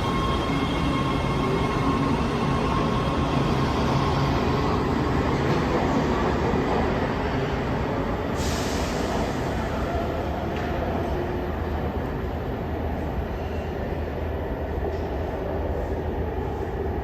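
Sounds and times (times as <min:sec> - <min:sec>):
subway train rumble: 0:00.0 - 0:17.0
burst of hiss: 0:08.4 - 0:09.4.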